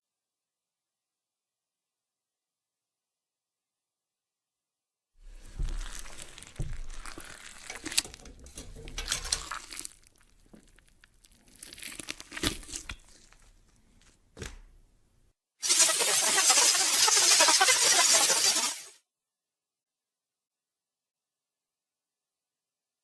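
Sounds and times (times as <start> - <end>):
crackling and crunching: 5.4 - 14.2.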